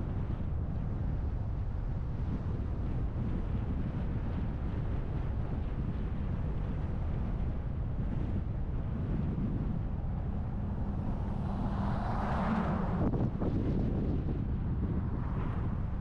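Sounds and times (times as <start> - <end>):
car road rumble and wind: 0.0 - 16.0.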